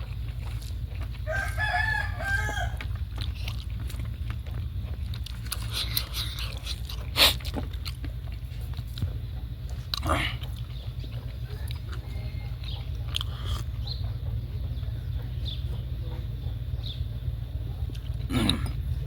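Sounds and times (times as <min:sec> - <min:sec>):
steady low hum: 0:00.0 - 0:19.0
rooster crowing: 0:01.2 - 0:03.1.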